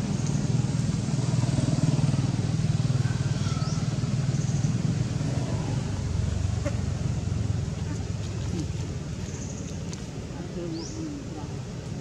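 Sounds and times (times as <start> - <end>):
small engine running: 0.0 - 8.0.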